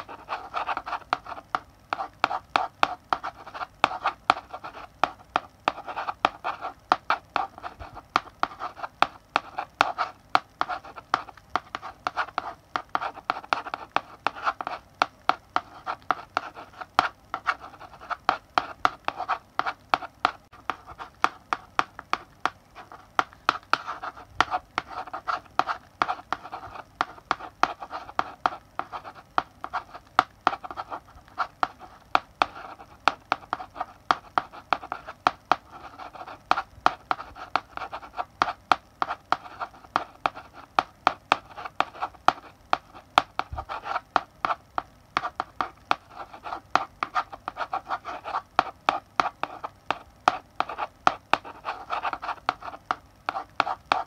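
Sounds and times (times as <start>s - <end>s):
chalk tapping and scratching: 0.0s - 54.0s.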